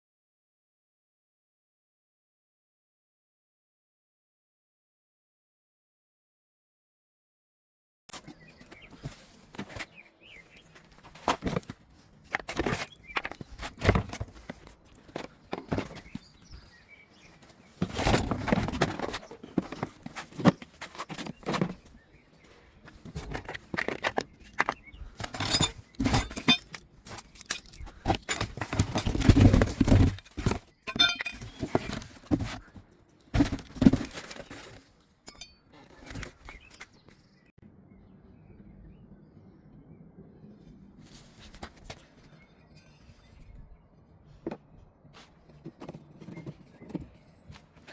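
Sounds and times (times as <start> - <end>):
rustling and scraping: 8.1 - 37.4, 40.8 - 47.9
knocks and thunks of parts: 10.7 - 36.9.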